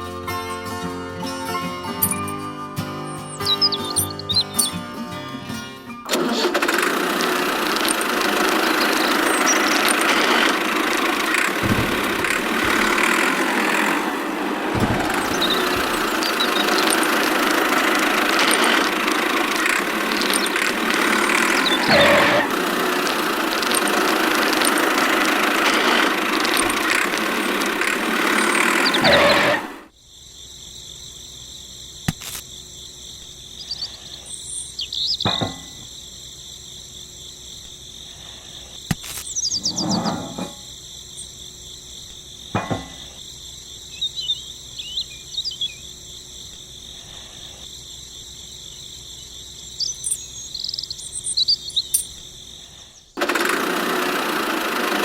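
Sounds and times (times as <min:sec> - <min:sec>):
small motor running: 0:06.1 - 0:29.9, 0:53.2 - 0:55.0
knocks: 0:11.5 - 0:14.0, 0:14.7 - 0:17.1, 0:35.2 - 0:35.8, 0:42.6 - 0:43.0.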